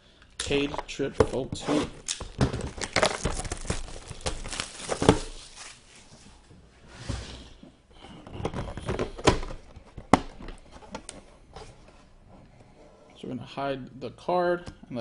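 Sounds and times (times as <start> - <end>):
packaging crinkling and tearing: 2.0 - 6.1.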